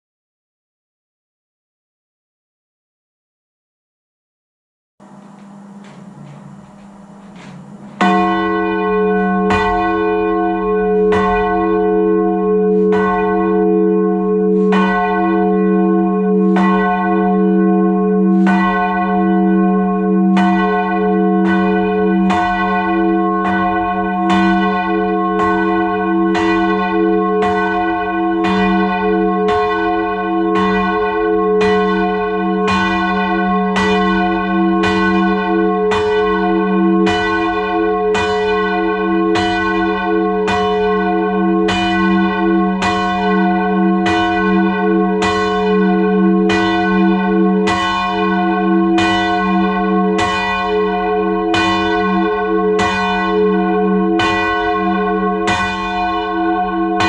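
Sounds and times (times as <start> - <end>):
steady ringing hum: 5.0 - 9.4
church bells ringing: 5.0 - 57.0.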